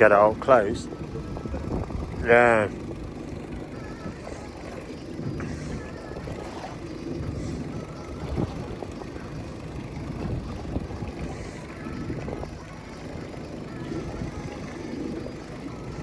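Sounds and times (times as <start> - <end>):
boat engine rumbling: 0.0 - 16.0.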